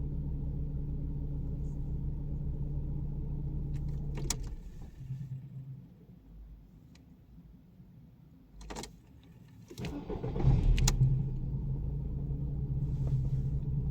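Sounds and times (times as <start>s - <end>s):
car engine cranking and idling: 0.0s - 6.1s, 8.6s - 13.9s
starter whirring: 9.8s - 11.3s.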